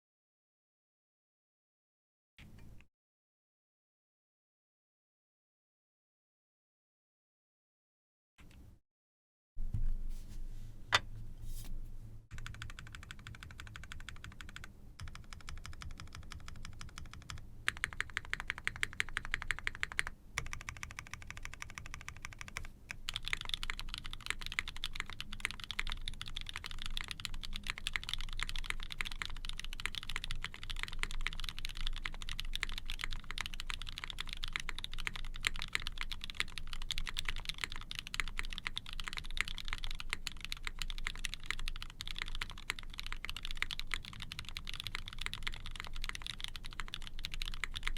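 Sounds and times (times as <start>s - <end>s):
mechanical keyboard typing: 12.3s - 47.9s.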